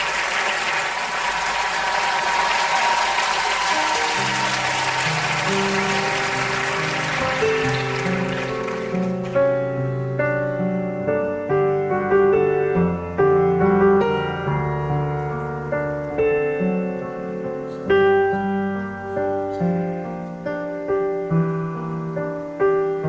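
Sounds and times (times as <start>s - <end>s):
slow piano chords and melody: 0.9s - 23.0s.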